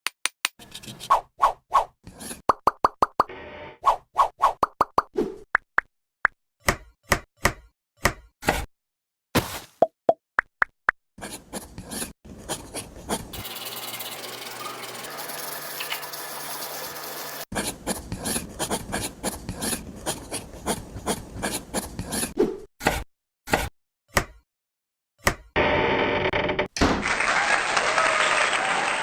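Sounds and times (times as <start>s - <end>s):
hand tool scraping bricks: 9.4s - 9.8s.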